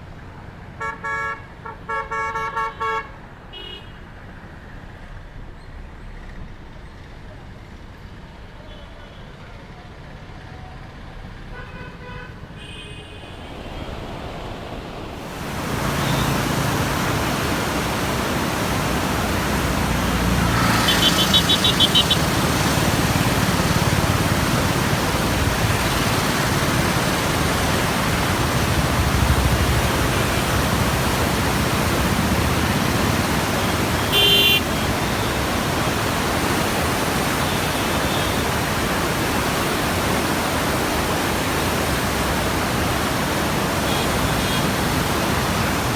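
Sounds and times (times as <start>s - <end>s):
road traffic: 0.0s - 45.9s
vehicle horns beeping: 0.8s - 4.0s, 15.6s - 24.6s, 33.4s - 35.4s
floodwater rushing: 13.0s - 45.9s.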